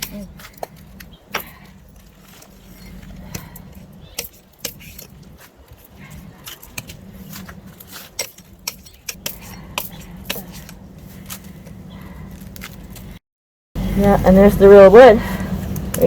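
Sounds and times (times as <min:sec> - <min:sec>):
axe chopping wood: 0:00.0 - 0:01.8, 0:03.2 - 0:11.4.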